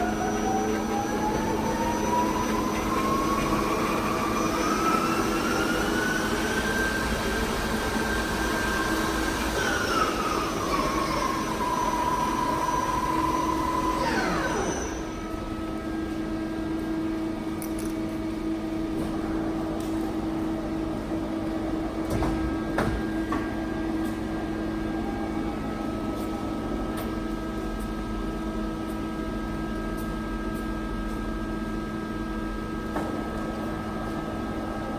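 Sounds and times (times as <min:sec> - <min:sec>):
lathe humming idle: 0:00.0 - 0:16.3.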